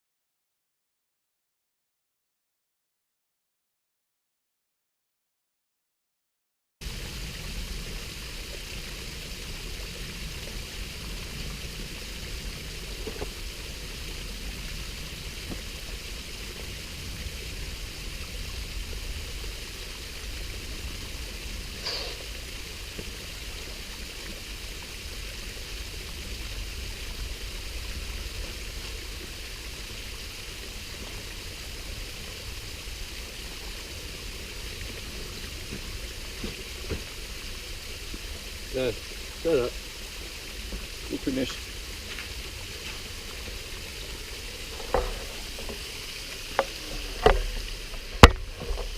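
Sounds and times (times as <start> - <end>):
waterfall and stream rushing: 6.8 - 48.9.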